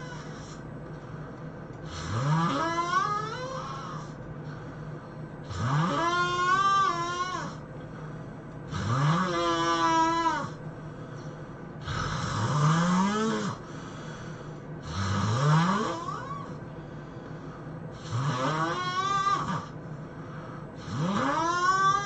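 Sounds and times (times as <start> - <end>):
person snoring: 0.0 - 0.6, 1.8 - 4.6, 5.4 - 7.6, 8.7 - 10.6, 11.8 - 16.7, 17.5 - 22.0.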